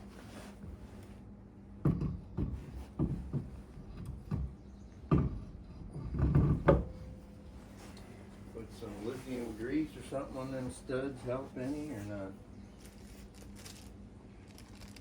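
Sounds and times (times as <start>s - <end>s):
steady low hum: 0.0s - 15.0s
tools knocking and clunking: 1.8s - 7.3s.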